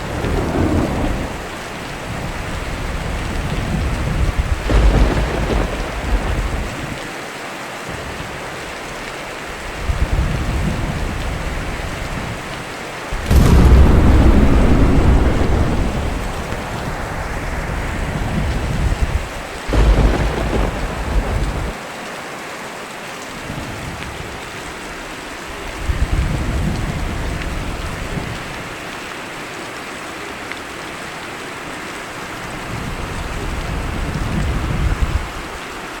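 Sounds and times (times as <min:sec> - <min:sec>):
thunder rumbling: 0:00.0 - 0:07.1, 0:13.1 - 0:21.8
steady rain: 0:00.0 - 0:36.0.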